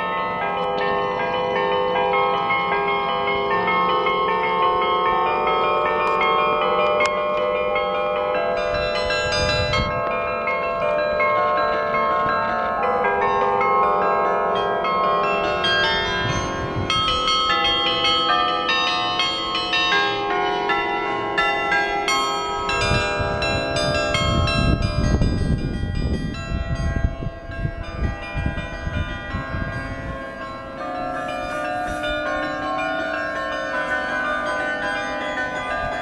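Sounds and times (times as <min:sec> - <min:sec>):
church bells ringing: 0:00.0 - 0:36.0.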